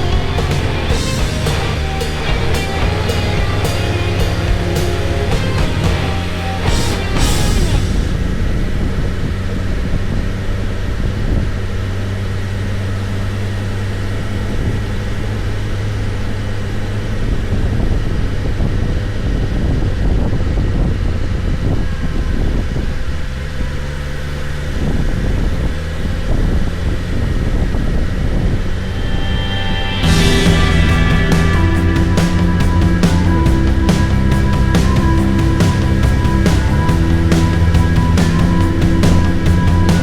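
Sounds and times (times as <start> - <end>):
motorcycle engine cruising: 0.0 - 40.0.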